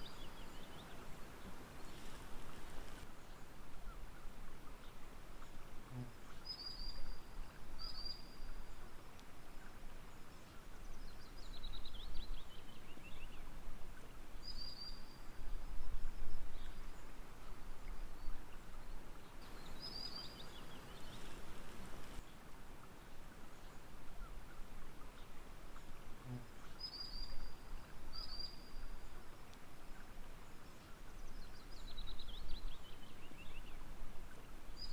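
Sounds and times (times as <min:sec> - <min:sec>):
steady background hiss: 0:00.0 - 0:34.9
birds singing: 0:18.2 - 0:22.3.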